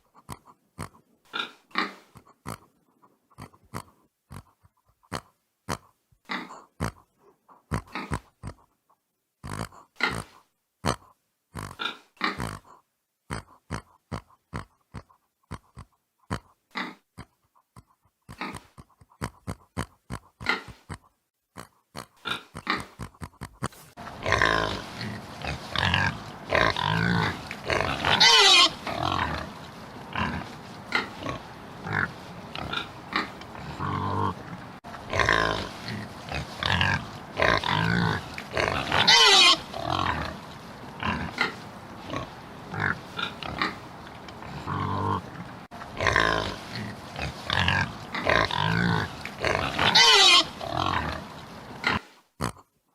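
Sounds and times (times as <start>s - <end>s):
pigs grunting: 0.0s - 8.7s, 9.4s - 52.6s
pigs squealing: 24.2s - 40.4s, 47.2s - 52.0s.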